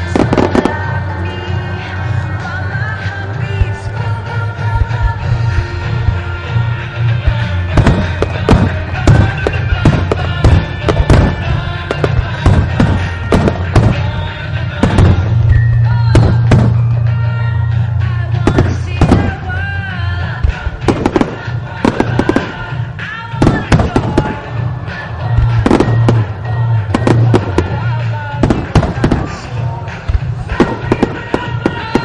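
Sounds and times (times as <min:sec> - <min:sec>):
loud music with sung melody: 0:00.0 - 0:32.0
firework shells bursting: 0:07.4 - 0:17.0.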